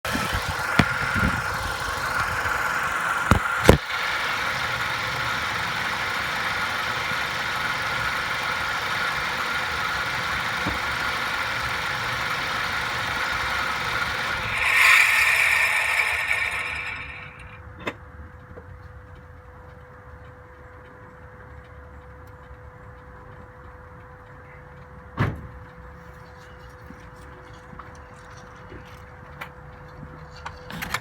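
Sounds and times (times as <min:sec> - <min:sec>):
car mechanical running sound: 0:00.0 - 0:18.0.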